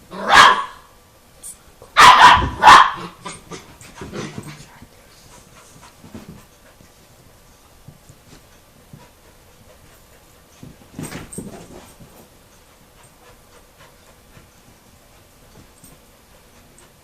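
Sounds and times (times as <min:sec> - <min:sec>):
dogs barking: 0:00.2 - 0:00.9, 0:02.0 - 0:03.3
dog panting: 0:03.5 - 0:11.0, 0:11.6 - 0:17.0.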